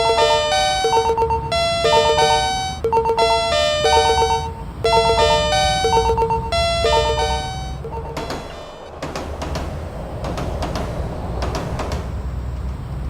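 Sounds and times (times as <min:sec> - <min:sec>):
electronic level crossing chime: 0:00.0 - 0:08.8.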